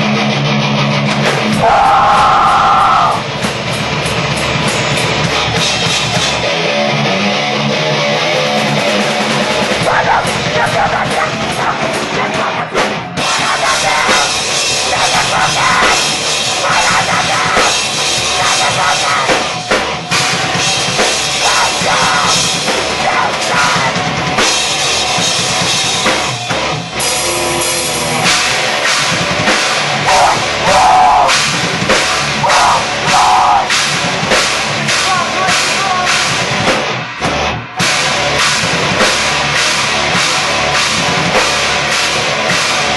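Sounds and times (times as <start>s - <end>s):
live rock band playing: 0.0s - 42.9s
pounding drum kit: 0.0s - 42.9s.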